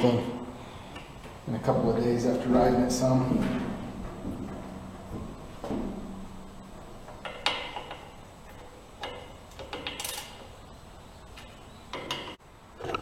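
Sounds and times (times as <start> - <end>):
metal tools clinking: 7.2 - 10.5.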